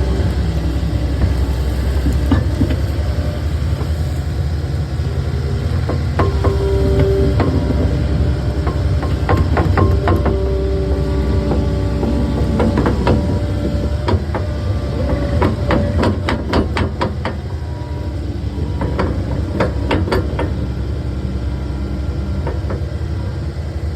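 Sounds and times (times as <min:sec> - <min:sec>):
skid steer engine running: 0:00.0 - 0:23.9
metallic clanks and knocks: 0:05.9 - 0:17.5, 0:18.6 - 0:20.7.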